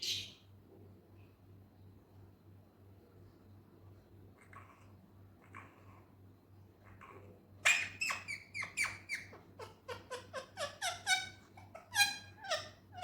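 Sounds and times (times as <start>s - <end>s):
parrot shrill calls: 7.6s - 13.0s.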